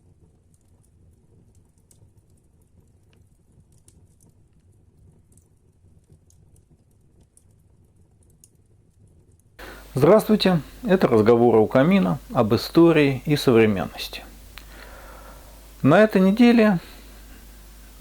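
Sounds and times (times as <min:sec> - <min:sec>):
wood fire crackling: 0:00.1 - 0:18.0
low hum: 0:09.6 - 0:18.0.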